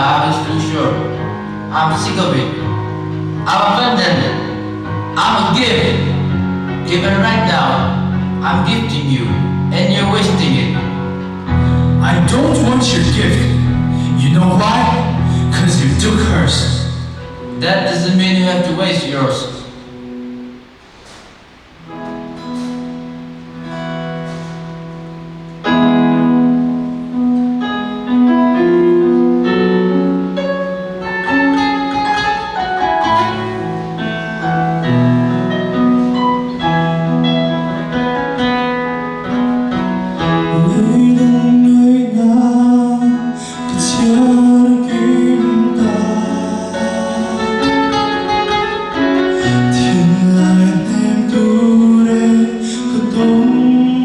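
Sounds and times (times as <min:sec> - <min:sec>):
song with guitar and singing: 0:00.0 - 0:19.3, 0:37.7 - 0:54.0.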